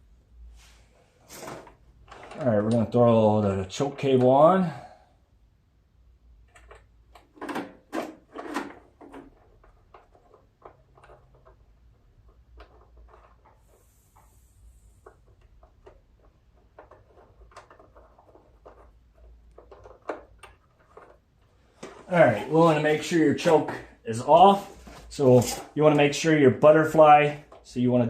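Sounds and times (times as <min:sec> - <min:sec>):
metal and plastic parts clicking: 0:06.4 - 0:13.7, 0:15.0 - 0:22.1.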